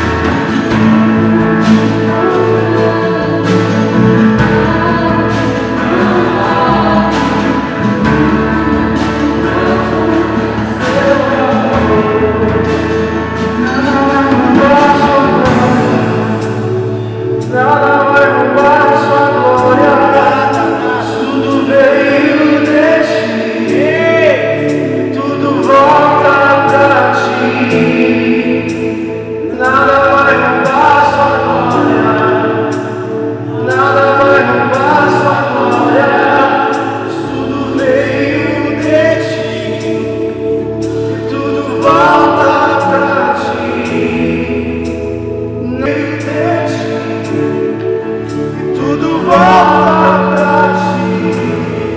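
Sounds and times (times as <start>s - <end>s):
held keyboard chords: 0.0s - 51.9s
voices singing gospel: 0.0s - 51.9s.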